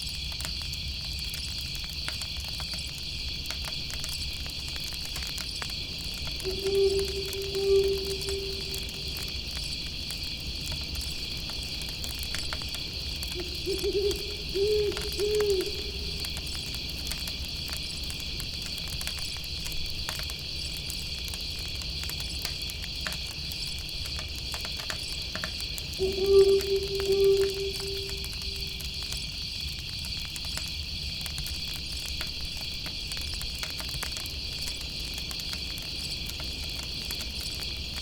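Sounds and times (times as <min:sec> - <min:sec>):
night insects chirping: 0:02.2 - 0:33.4
campfire crackling: 0:03.3 - 0:30.8
owl hooting: 0:06.4 - 0:09.6, 0:13.2 - 0:17.0, 0:25.9 - 0:29.1.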